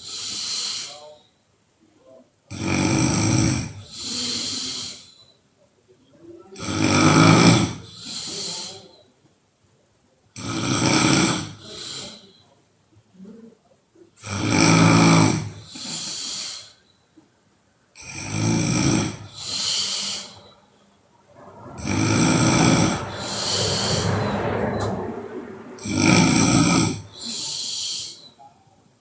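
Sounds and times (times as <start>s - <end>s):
woman snoring loudly: 2.5s - 5.0s, 6.6s - 8.4s, 10.4s - 12.2s, 14.2s - 16.6s, 18.0s - 20.4s, 21.8s - 24.3s, 25.8s - 28.2s.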